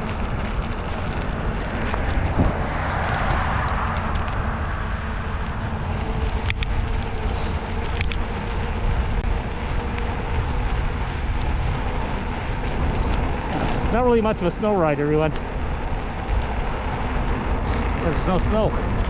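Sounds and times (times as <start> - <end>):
wind on microphone: 0.0 - 14.4
fat tyres rolling rumble: 0.0 - 19.0.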